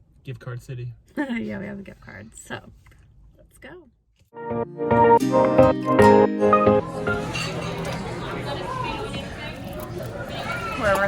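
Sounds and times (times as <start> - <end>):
background music with held chords: 4.4 - 7.3.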